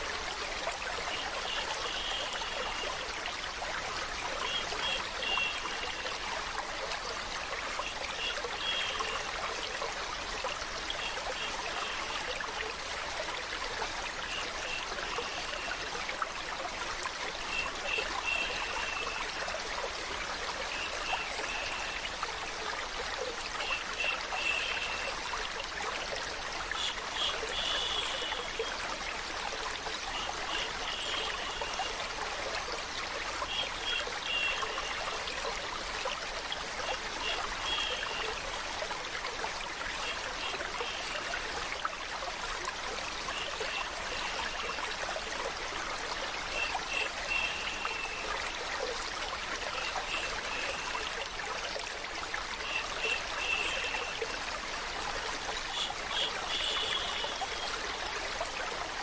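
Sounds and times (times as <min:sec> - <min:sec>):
stream trickling: 0:00.0 - 0:59.0.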